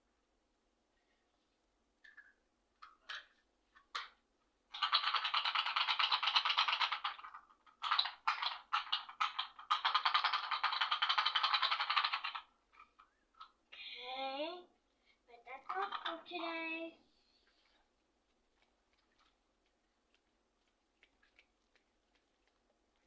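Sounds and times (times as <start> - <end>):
small hard pieces rattling: 4.7 - 13.5.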